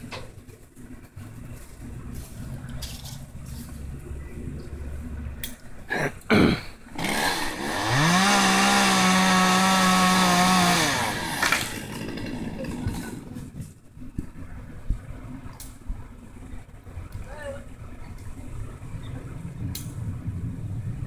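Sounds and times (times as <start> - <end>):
chainsaw revving: 6.9 - 13.3.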